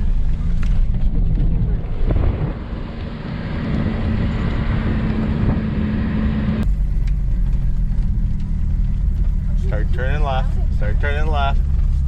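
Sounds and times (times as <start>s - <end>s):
car engine driving on dirt: 0.0s - 12.0s
tyres rolling on dirt: 0.0s - 12.0s.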